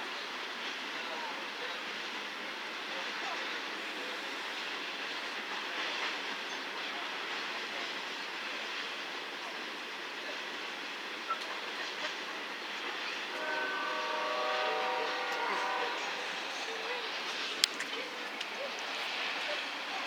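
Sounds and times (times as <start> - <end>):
freight train cars rolling on rails: 0.0 - 20.0
locomotive air horn: 13.3 - 16.8.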